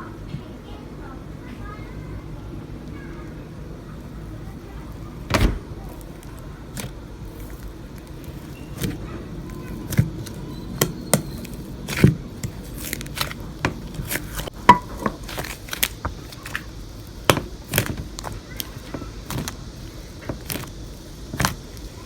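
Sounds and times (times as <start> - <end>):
low steady background hum: 0.0 - 22.0
slime clicking and popping: 5.8 - 22.0.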